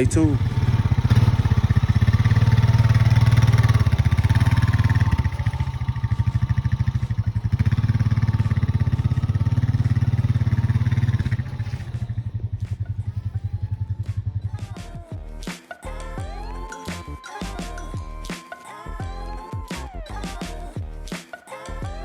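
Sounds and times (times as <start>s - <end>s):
vehicle engine idling: 0.0s - 15.4s.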